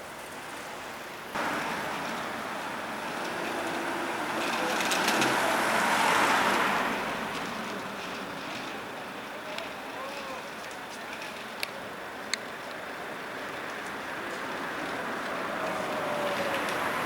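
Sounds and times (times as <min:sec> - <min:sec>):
vehicle passing rushing noise: 0:01.3 - 0:08.2, 0:14.0 - 0:17.0.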